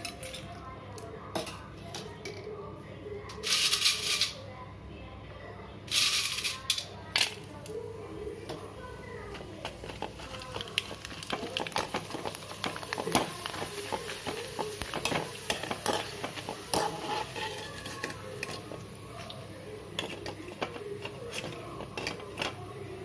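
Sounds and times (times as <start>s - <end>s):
crisps frying in hot oil: 5.9s - 23.0s
spoon stirring in a pan: 6.2s - 23.0s.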